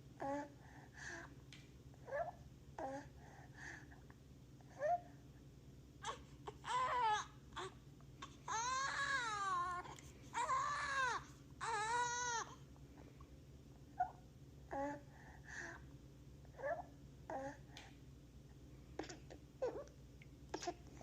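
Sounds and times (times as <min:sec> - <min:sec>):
recorded infant crying: 0:06.0 - 0:12.6.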